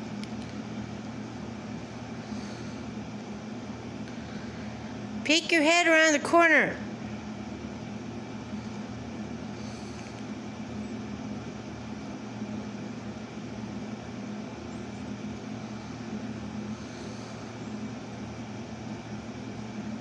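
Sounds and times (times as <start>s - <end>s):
appliance humming: 0.0s - 20.0s.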